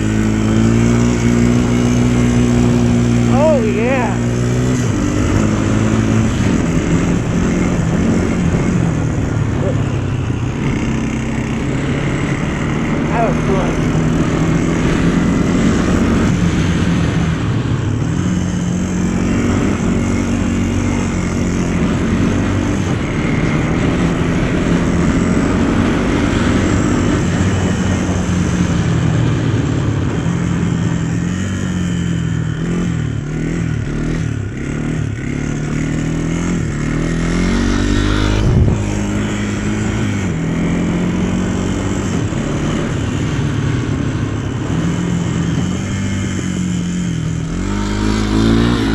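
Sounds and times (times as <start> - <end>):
vehicle engine running: 0.0 - 48.9
steady rushing noise: 35.8 - 48.9.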